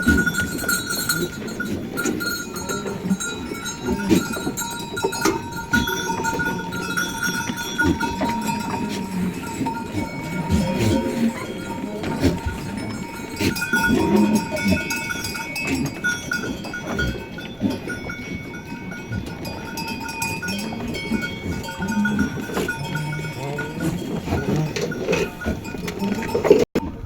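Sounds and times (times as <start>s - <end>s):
sheep bells ringing: 0.0s - 26.7s
sheep bleating: 5.6s - 14.9s, 21.4s - 24.9s.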